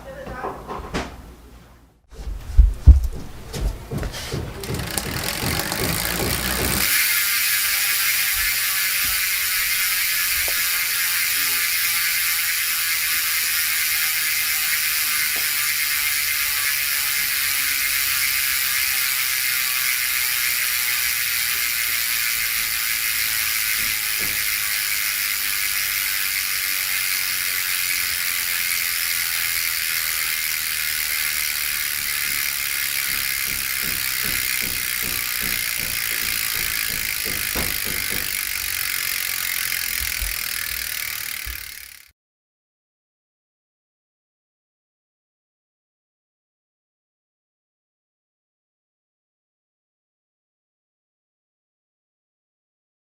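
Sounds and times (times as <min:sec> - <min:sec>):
bicycle freehub clicking buzz: 0:03.9 - 0:42.1.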